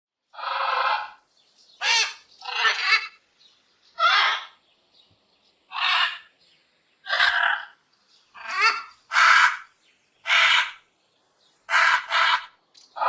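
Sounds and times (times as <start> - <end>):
parrot squawking: 0.4 - 1.2, 1.8 - 3.2, 4.0 - 4.6, 5.7 - 6.3, 7.1 - 7.8, 8.4 - 10.8, 11.7 - 13.0.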